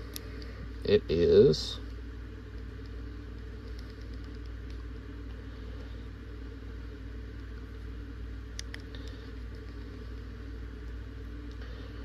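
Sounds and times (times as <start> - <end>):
low mechanical hum: 0.0 - 12.0
faint small clicks: 8.5 - 9.8.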